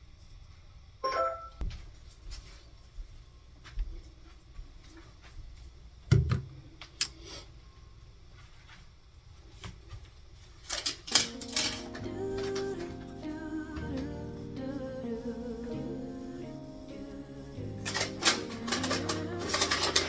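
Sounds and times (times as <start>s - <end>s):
background music: 11.2s - 20.0s.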